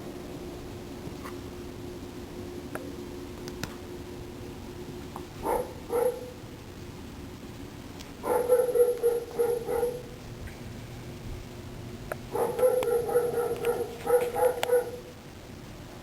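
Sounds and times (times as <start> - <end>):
dog barking: 5.4 - 6.4, 8.2 - 10.2, 12.3 - 15.1.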